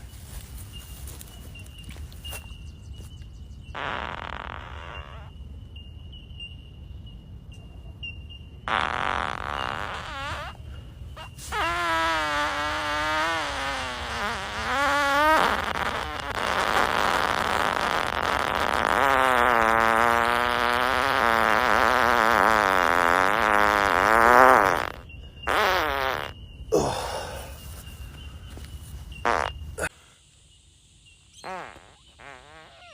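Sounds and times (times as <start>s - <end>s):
man farting: 3.8s - 5.3s, 8.7s - 10.6s, 11.2s - 27.3s, 29.2s - 29.9s, 31.4s - 32.9s
airy hiss: 11.2s - 26.3s.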